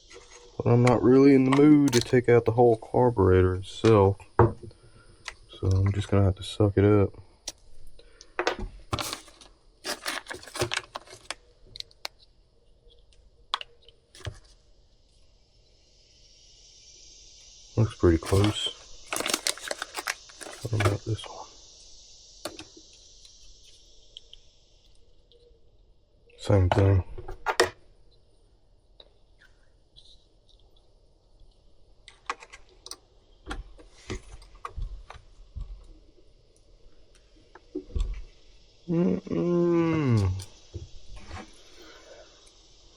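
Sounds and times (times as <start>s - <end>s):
plastic parts and tools clicking: 8.5s - 12.2s, 18.2s - 21.1s.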